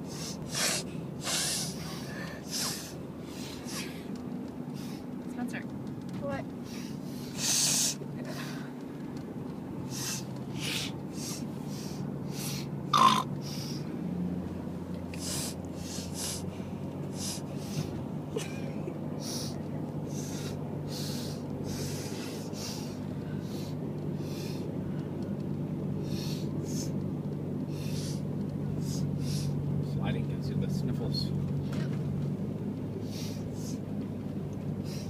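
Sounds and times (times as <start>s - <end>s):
steady low hum: 0.0s - 35.0s
short sniffs: 0.1s - 4.0s, 28.8s - 29.6s, 33.0s - 33.8s.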